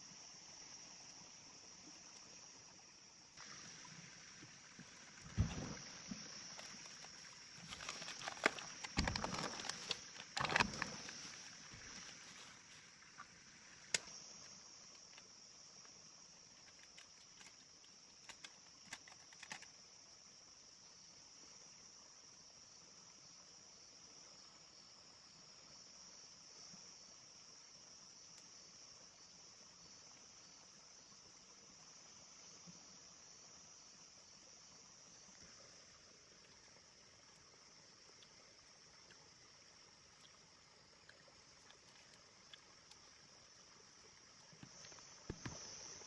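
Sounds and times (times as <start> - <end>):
insect chirring: 0.0 - 22.0, 25.8 - 46.0
handling knocks and rustling: 5.2 - 12.9.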